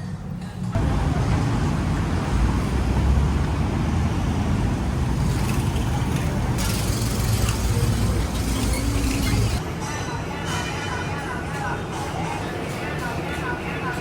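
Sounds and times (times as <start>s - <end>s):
traffic rumble of engines and tyres: 0.1s - 9.6s.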